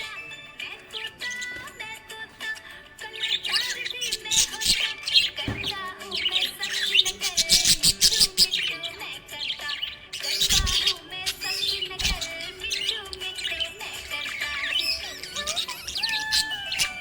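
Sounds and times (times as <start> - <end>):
budgerigar chirping and warbling: 0.0 - 17.0.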